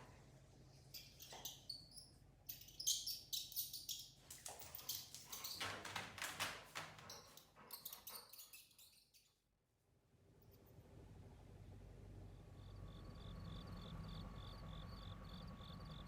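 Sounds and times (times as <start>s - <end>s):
mouse squeaking: 1.0s - 4.2s.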